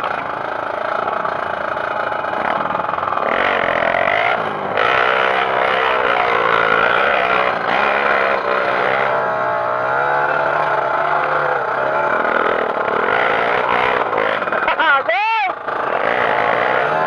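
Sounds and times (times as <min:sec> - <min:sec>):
motorcycle engine revving unevenly: 0:00.0 - 0:17.0.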